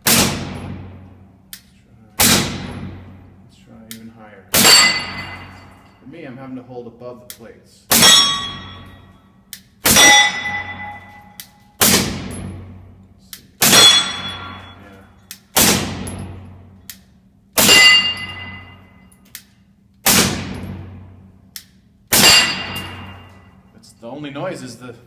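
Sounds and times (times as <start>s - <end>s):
steel plate clanging: 4.6s - 6.0s, 7.9s - 9.1s, 9.9s - 11.4s, 13.6s - 14.9s, 17.6s - 19.1s, 22.2s - 23.6s.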